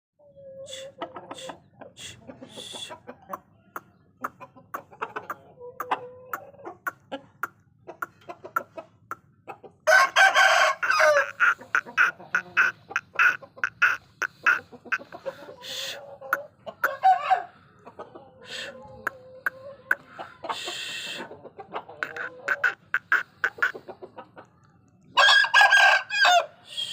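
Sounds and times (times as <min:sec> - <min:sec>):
chickens clucking: 0:00.2 - 0:26.9
sharp rapid chicken calls: 0:00.5 - 0:24.6, 0:25.2 - 0:26.9
loud chicken call: 0:09.9 - 0:17.6, 0:18.4 - 0:21.4, 0:22.0 - 0:23.9, 0:25.2 - 0:26.9.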